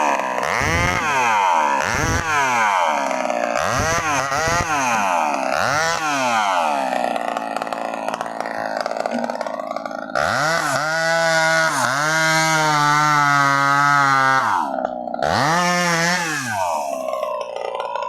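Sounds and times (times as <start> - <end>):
chainsaw engine revving: 0.0 - 18.0.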